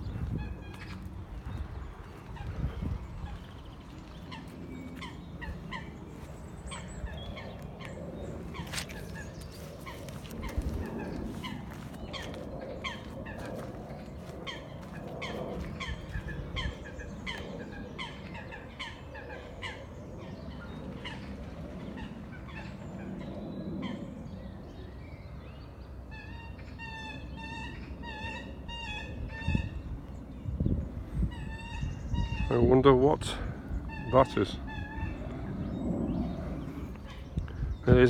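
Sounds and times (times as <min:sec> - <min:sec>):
bird calling with downward sweeps: 0:00.0 - 0:24.8.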